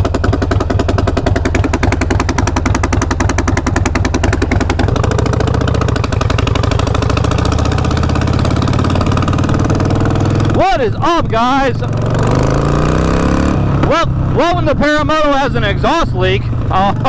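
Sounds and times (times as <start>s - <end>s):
harsh exhaust pulses: 0.0s - 17.0s
motorcycle engine running loud: 0.0s - 17.0s.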